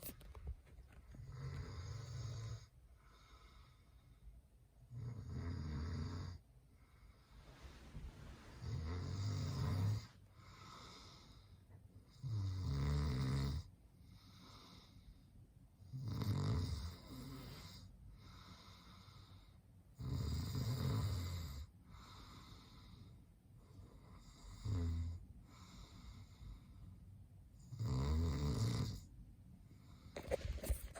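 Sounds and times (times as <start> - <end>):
quiet breathing: 1.1 - 4.6, 6.2 - 12.2, 13.9 - 15.5, 17.0 - 19.8, 21.6 - 24.6, 25.4 - 27.2
man snoring: 5.0 - 6.4, 8.6 - 10.1, 12.2 - 13.6.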